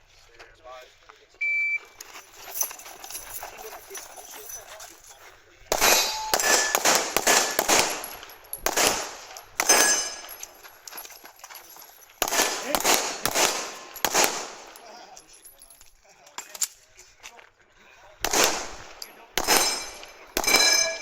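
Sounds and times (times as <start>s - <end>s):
pistol shots with echo: 5.7s - 10.5s, 12.2s - 15.0s, 18.2s - 21.0s.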